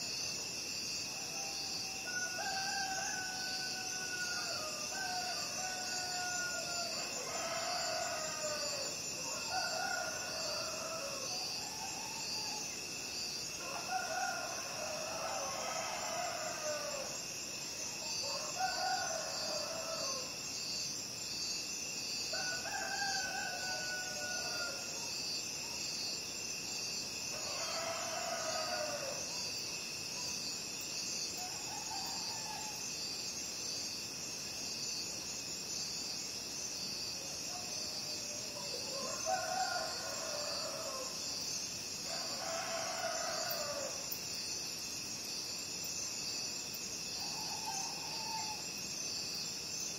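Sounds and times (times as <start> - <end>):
night crickets chorus: 0.0 - 49.9
roosters crowing: 42.1 - 44.0.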